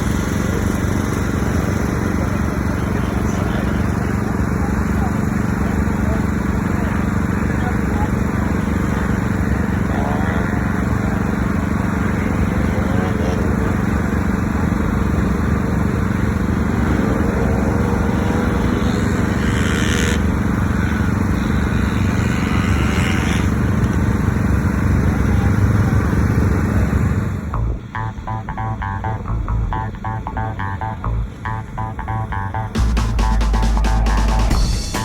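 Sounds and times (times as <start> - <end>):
cars hissing past: 0.0 - 27.6
car engines revving: 0.0 - 35.0.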